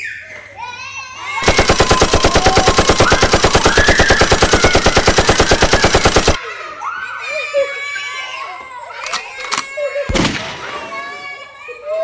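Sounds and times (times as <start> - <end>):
rapid toy machine-gun fire: 1.4 - 6.4, 10.1 - 11.4.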